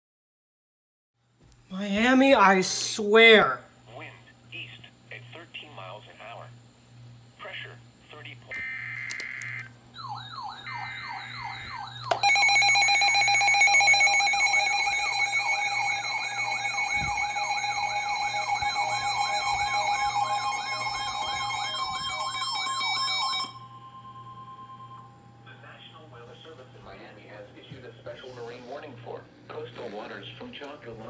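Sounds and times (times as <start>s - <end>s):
electronic siren wailing: 8.5s - 25.2s
loud steady tone: 8.5s - 26.2s.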